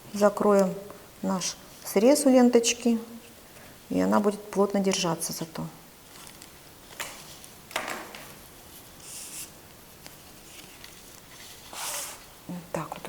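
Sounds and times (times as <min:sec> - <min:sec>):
paper and cardboard rustling: 0:08.2 - 0:12.3.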